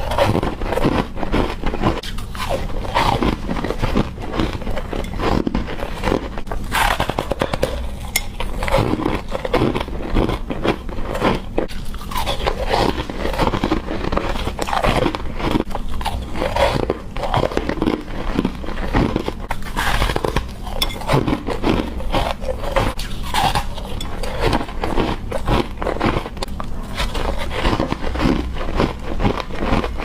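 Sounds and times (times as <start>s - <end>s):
ice crunching being chewed: 0.0s - 30.0s.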